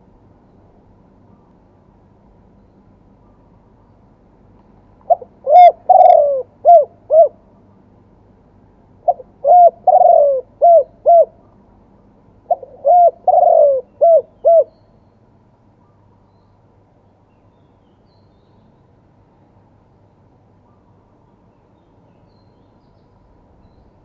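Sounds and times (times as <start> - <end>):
dove cooing: 5.1 - 7.4, 9.0 - 11.4, 12.5 - 14.7.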